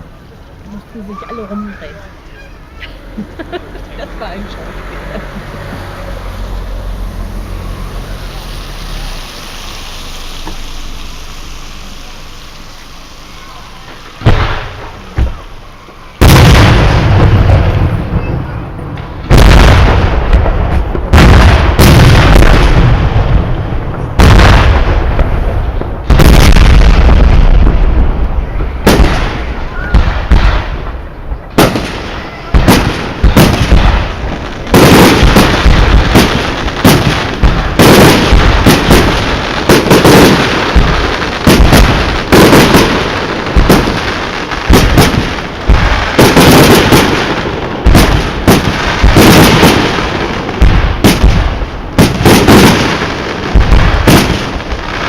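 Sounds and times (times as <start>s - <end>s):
fireworks banging: 0.0s - 55.0s.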